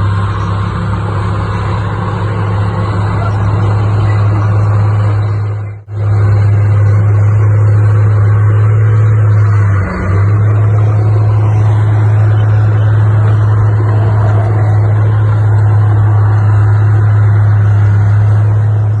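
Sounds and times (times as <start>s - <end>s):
diesel engine running: 0.0s - 19.0s.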